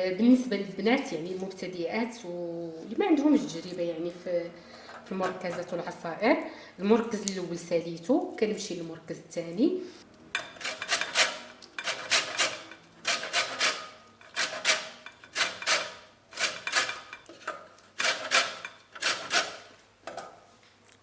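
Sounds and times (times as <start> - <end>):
peel rasping on a grater: 10.6 - 17.3, 18.0 - 19.7.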